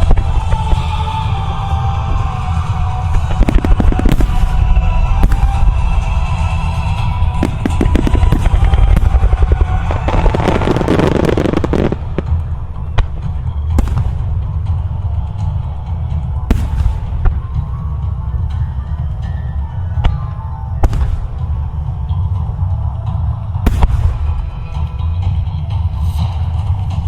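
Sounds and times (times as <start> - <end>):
recorded music: 0.0 - 27.0
fireworks bursting and crackling: 3.0 - 15.6, 16.4 - 17.8, 23.7 - 25.1.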